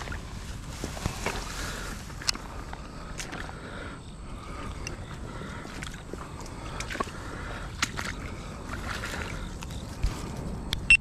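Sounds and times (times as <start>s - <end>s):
creek water trickling: 0.0s - 10.6s.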